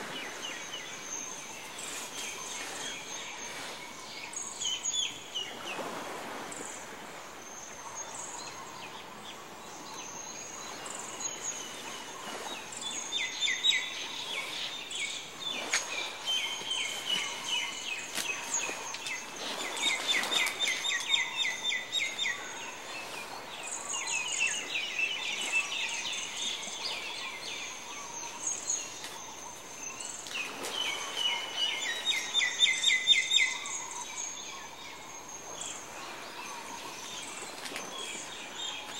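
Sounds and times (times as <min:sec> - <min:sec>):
songbirds singing: 0:00.0 - 0:05.9, 0:06.6 - 0:38.9.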